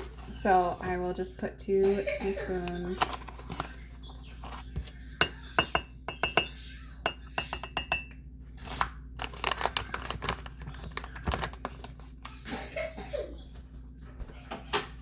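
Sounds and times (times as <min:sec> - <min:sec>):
spoon tapping and scraping: 0:04.4 - 0:08.2
teaspoon clinking against dishware: 0:05.2 - 0:08.2.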